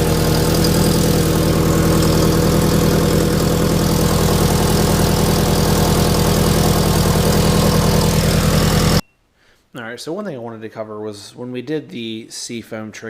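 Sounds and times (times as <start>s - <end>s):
car engine idling: 0.0s - 9.0s.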